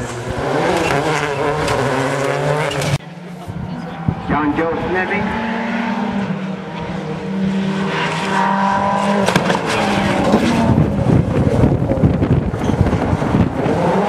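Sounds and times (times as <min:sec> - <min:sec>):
rally car engine at high revs: 0:00.0 - 0:14.0
exhaust pops and crackles: 0:09.2 - 0:13.9.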